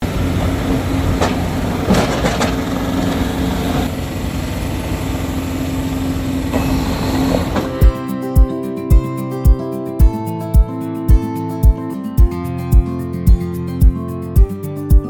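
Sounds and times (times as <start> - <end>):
diesel engine running: 0.0 - 7.8.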